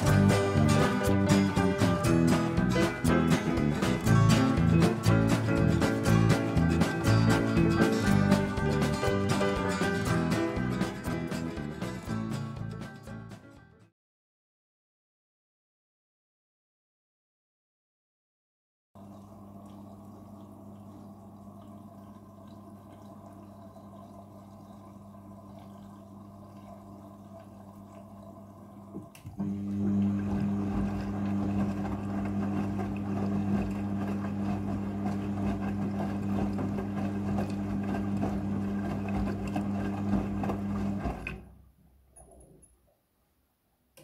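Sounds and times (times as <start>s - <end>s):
water rushing through machine: 0.0s - 11.5s, 19.0s - 41.5s
washing machine electrical hum: 0.0s - 11.9s, 19.0s - 42.5s.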